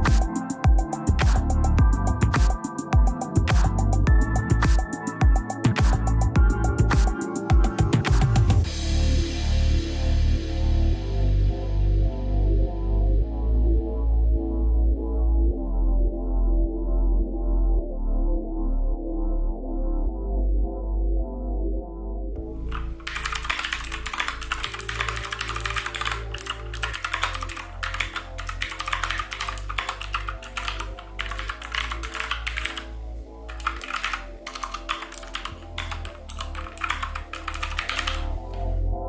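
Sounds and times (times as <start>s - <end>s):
background music: 0.0s - 39.0s
mechanical keyboard typing: 22.7s - 32.9s, 33.5s - 38.4s.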